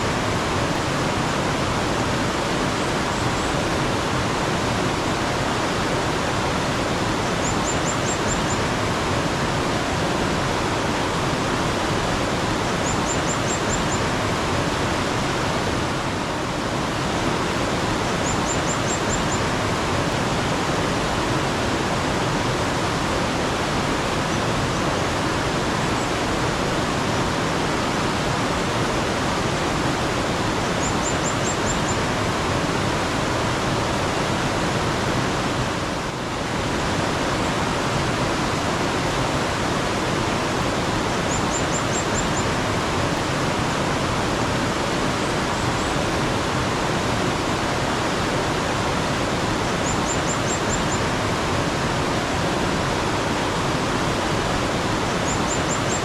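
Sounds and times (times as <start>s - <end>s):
stream water rushing: 0.0s - 56.0s
small bird high call: 18.2s - 19.5s.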